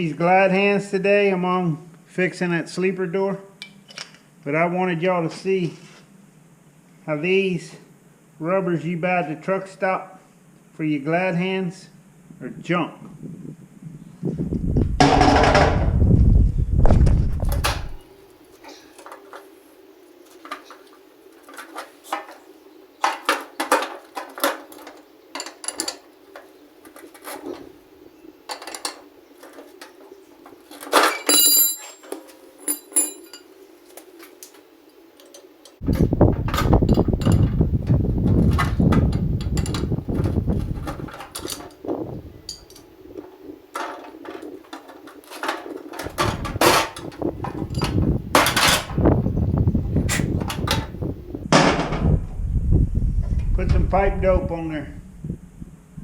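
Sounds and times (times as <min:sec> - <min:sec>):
tools and metal parts clinking: 0:18.6 - 0:19.5, 0:20.2 - 0:27.7, 0:28.5 - 0:34.6, 0:35.2 - 0:41.8, 0:42.4 - 0:49.0, 0:50.1 - 0:50.9
low rumbling noise: 0:46.1 - 0:56.0.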